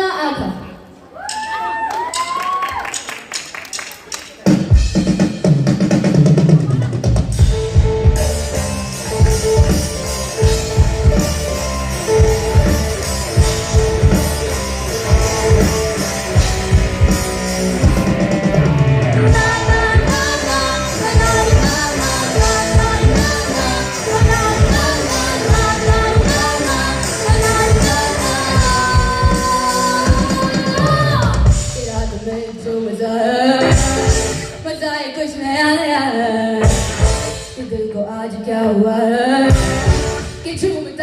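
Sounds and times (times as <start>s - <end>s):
drum kit beating: 3.7s - 32.3s, 33.6s - 34.6s, 36.6s - 37.6s, 39.5s - 40.5s
electric guitar: 6.7s - 31.8s, 33.6s - 34.7s
high melody line: 7.4s - 30.8s.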